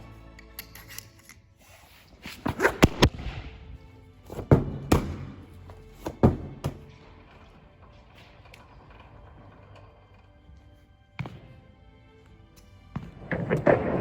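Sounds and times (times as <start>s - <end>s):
faint background music: 0.0s - 14.0s
gym equipment clanking: 4.4s - 10.8s.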